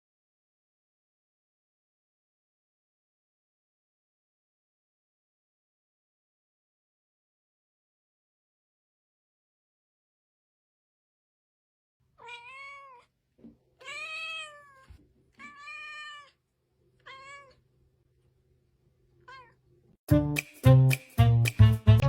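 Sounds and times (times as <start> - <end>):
cat meowing: 12.2 - 13.2, 13.8 - 16.4, 17.0 - 17.7, 19.2 - 19.6.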